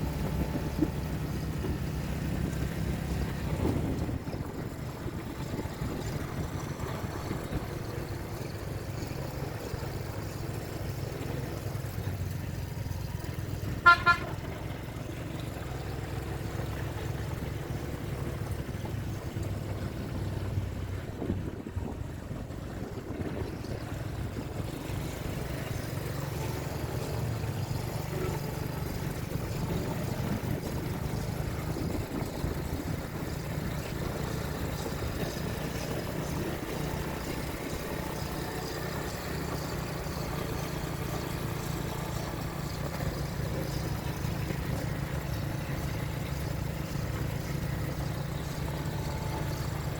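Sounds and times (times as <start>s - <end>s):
road traffic rumble: 0.0s - 49.9s
vehicle horn double beep: 13.8s - 14.6s.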